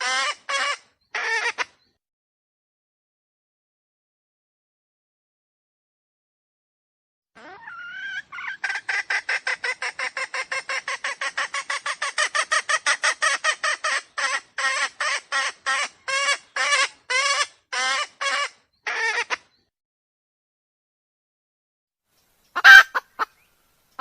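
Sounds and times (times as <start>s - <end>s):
wild chicken calling: 0.0s - 1.8s, 7.4s - 19.5s, 22.5s - 24.0s.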